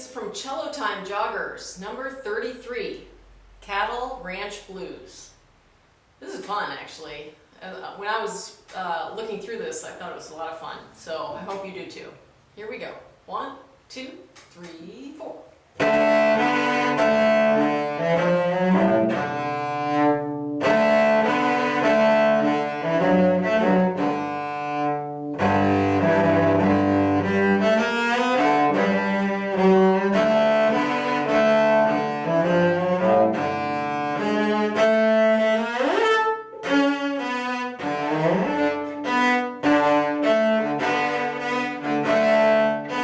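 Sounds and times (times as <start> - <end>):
cello playing bluesy tune: 15.8 - 43.0.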